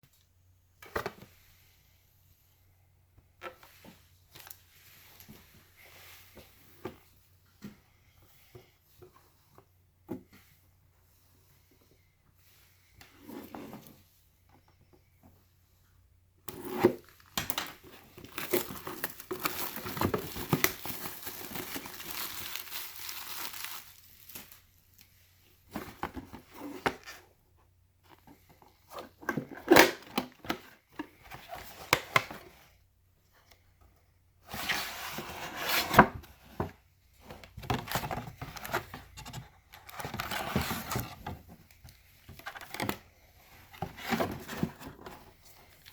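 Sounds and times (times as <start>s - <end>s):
wrapper crinkling and tearing: 18.2s - 24.6s.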